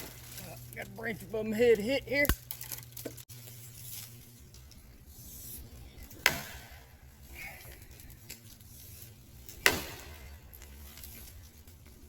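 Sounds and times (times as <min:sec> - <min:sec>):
axe chopping into wood: 0:06.2 - 0:06.8, 0:09.6 - 0:10.2.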